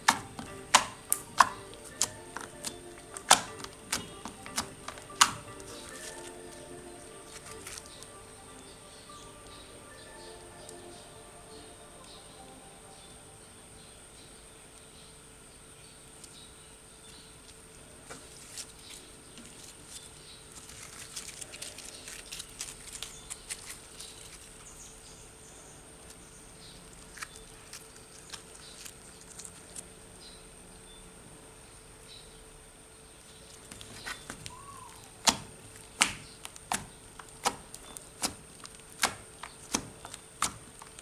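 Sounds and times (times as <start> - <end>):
sticky slime clicks and pops: 0.0 - 8.2, 33.7 - 41.0.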